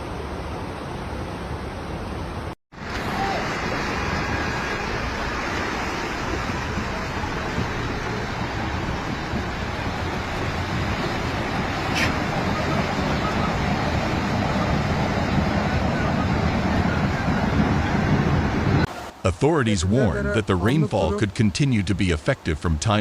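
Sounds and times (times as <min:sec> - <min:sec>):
heavy rain: 0:00.0 - 0:21.2
floodwater rushing: 0:00.0 - 0:23.0.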